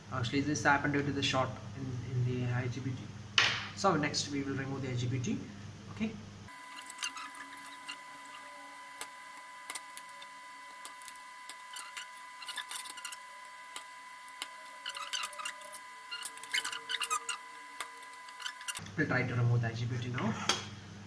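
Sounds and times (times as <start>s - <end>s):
faint high whine: 3.9s - 19.9s.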